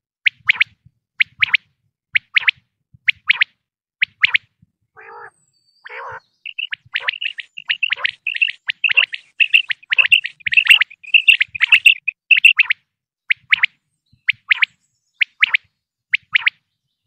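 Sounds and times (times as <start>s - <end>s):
quail chirping: 4.1s - 12.8s
low raspy quail notes: 5.9s - 12.6s.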